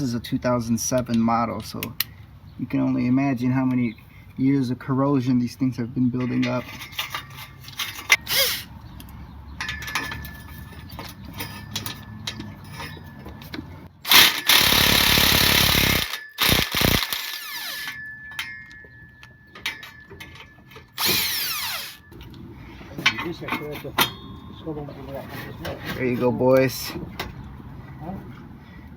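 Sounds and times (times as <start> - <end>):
power tool bursts: 8.2 - 8.7, 14.0 - 18.0, 21.0 - 22.1.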